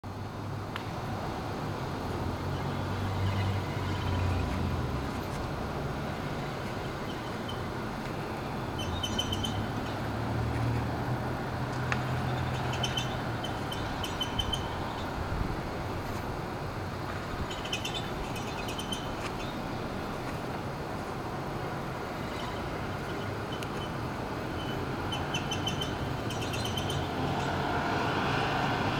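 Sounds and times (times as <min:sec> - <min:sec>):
brake squeaking chirps: 0:06.1 - 0:11.0, 0:11.7 - 0:15.2, 0:17.2 - 0:20.2, 0:22.0 - 0:27.6.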